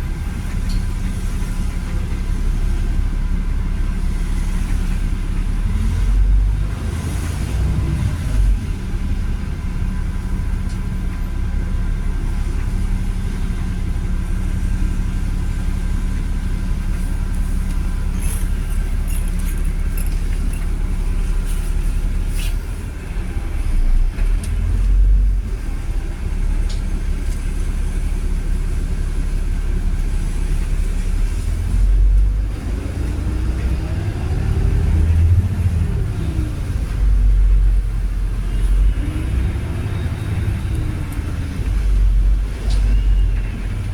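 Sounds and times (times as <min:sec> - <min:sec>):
bus diesel engine rumbling: 0:00.0 - 0:43.9
rattles and clicks: 0:17.7 - 0:20.9.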